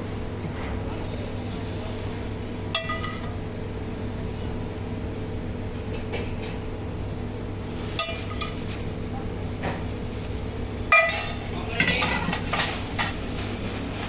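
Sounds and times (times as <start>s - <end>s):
steady low hum: 0.0s - 14.0s
metal utensils and dishes clinking: 2.8s - 3.3s, 7.9s - 8.6s, 10.9s - 13.2s.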